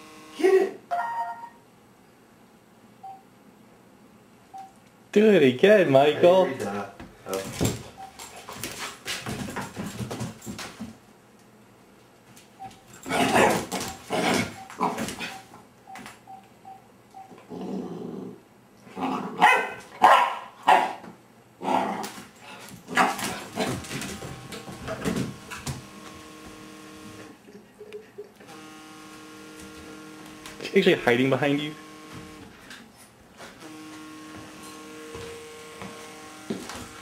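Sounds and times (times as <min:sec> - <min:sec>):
puppy barking and growling: 0:13.1 - 0:15.4, 0:17.6 - 0:21.0, 0:22.9 - 0:23.8.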